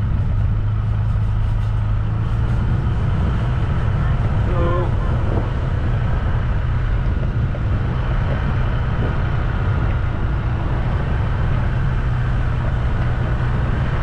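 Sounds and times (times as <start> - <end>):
road noise: 0.0 - 14.0
vehicle engine droning: 0.0 - 14.0.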